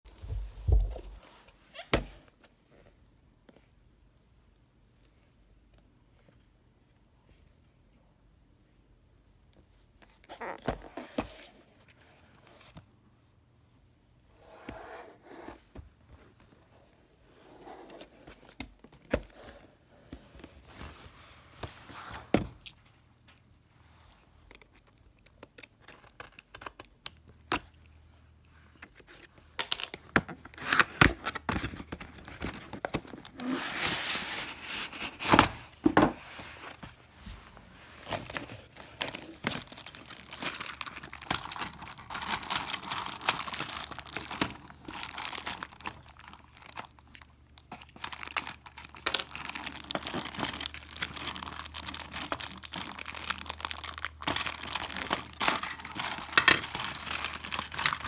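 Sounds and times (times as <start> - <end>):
wrapping tearing and crinkling: 36.4 - 58.0.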